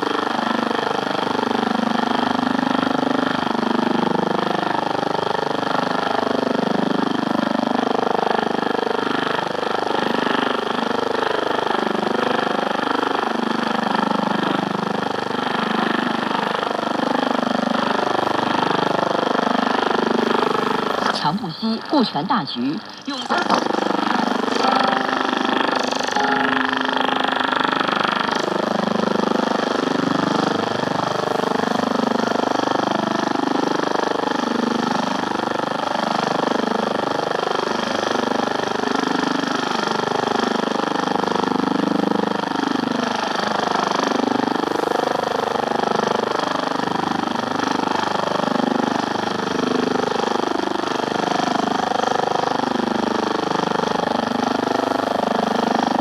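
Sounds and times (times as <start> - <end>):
churning radio noise: 19.7 - 28.7.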